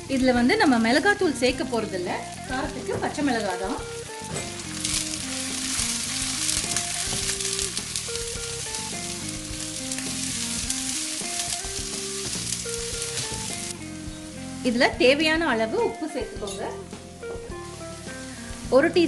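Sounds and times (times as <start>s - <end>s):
onions sizzling in oil: 0.0s - 19.0s
stirring in a pan: 4.2s - 13.7s.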